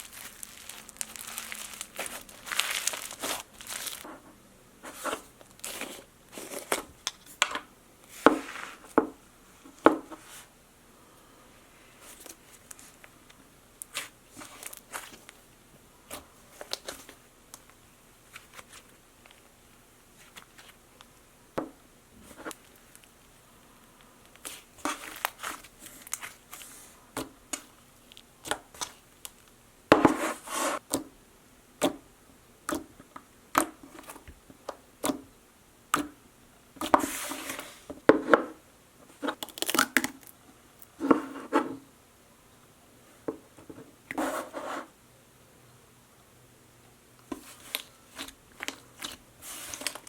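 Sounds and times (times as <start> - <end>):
slime squishing by hand: 0.0 - 4.1, 13.8 - 15.4, 24.3 - 29.4, 47.2 - 50.0.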